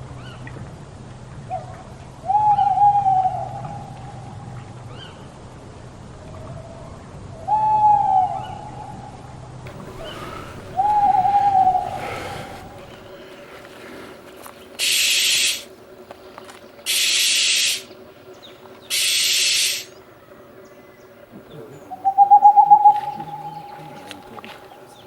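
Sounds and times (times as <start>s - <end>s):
owl hooting: 2.2s - 4.2s, 9.7s - 15.7s, 16.9s - 17.9s, 18.9s - 20.0s, 21.4s - 25.0s.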